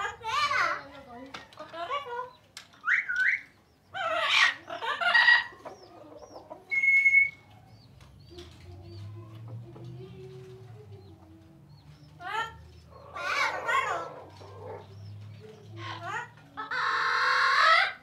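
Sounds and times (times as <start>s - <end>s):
parrot whistling and squawking: 2.8s - 5.5s
low steady vocal sound: 8.2s - 17.4s.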